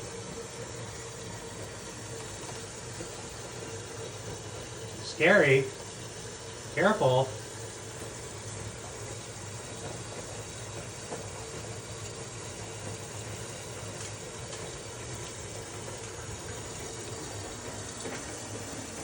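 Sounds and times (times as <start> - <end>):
washing machine humming: 0.0 - 19.0
water running in: 0.0 - 19.0.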